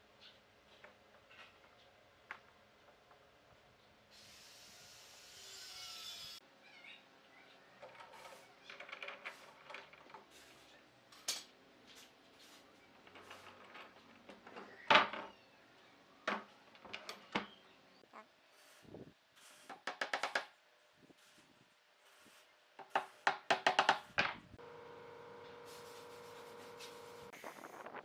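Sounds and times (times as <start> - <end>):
wooden pieces rubbed and knocked: 7.8 - 10.7.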